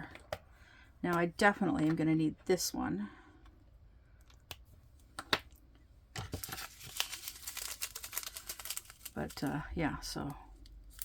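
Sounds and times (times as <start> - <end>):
plastic bags crinkling: 6.2 - 9.6.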